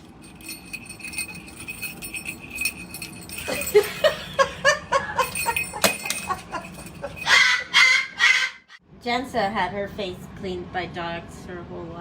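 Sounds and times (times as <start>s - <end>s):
faint jingling: 0.0s - 7.6s
rhythmic laughing sounds: 3.2s - 7.8s.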